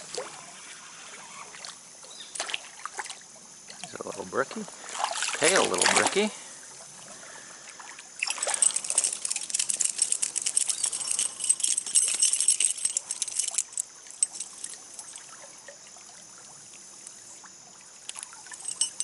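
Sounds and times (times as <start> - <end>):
stream trickling: 0.0 - 19.0
water splashing: 4.8 - 6.4.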